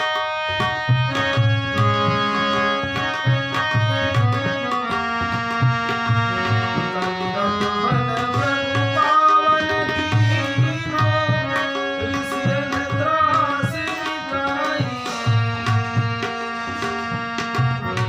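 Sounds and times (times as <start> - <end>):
tabla playing steady rhythm: 0.0 - 18.0.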